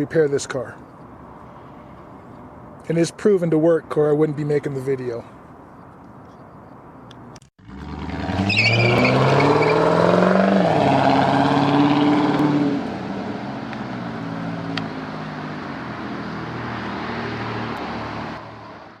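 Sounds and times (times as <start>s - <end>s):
car engine revving then idling: 7.6s - 13.7s.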